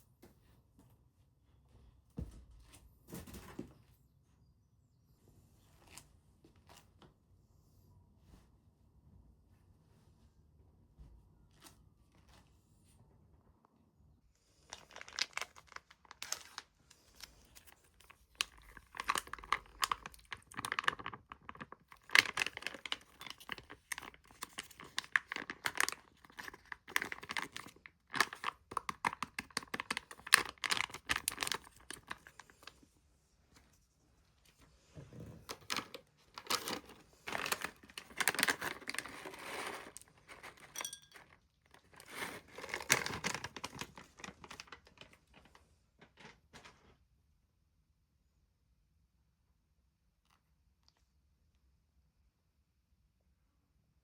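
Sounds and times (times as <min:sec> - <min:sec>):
packaging crinkling and tearing: 0:14.6 - 0:32.7, 0:35.5 - 0:40.8, 0:41.7 - 0:45.6.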